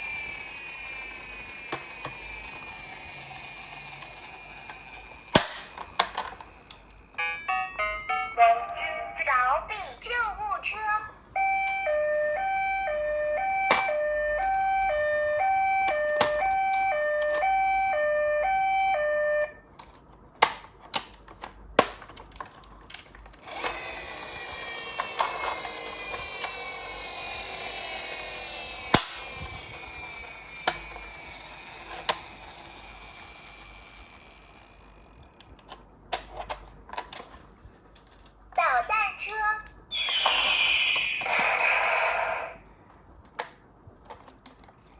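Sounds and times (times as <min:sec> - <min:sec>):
toy siren two-tone: 0:00.0 - 0:05.4, 0:11.3 - 0:19.6, 0:23.5 - 0:35.0, 0:39.9 - 0:41.4
toy car whirring rattle: 0:00.0 - 0:07.5, 0:22.3 - 0:37.4, 0:39.9 - 0:41.8.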